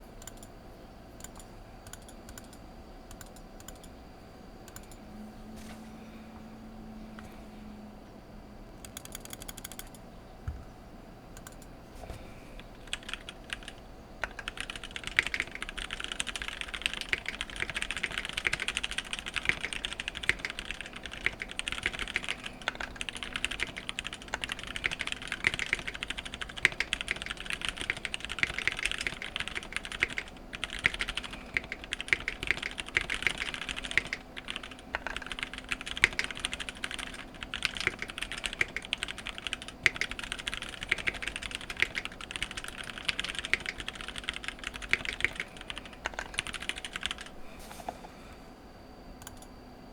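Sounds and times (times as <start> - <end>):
typing on mechanical keyboard: 1.2 - 3.9, 8.8 - 10.0, 12.7 - 47.3.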